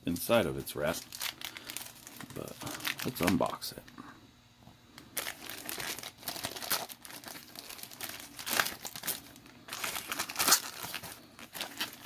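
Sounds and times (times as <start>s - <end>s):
packaging wrap crinkling: 0.3s - 4.0s, 5.0s - 12.0s
packaging wrap ripping: 0.9s - 3.6s, 5.1s - 12.0s.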